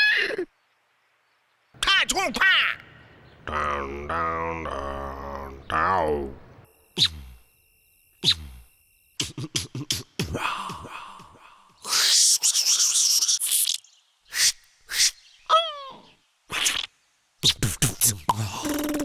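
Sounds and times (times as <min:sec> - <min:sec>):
man beatboxing mouth sounds: 0:07.0 - 0:07.4, 0:08.2 - 0:13.8, 0:14.4 - 0:15.1, 0:16.5 - 0:19.0.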